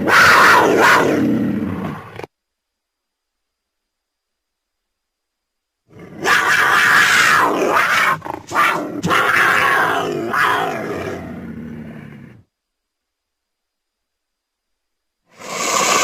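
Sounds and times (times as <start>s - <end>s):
cougar calling: 0.0s - 2.3s, 5.9s - 12.4s.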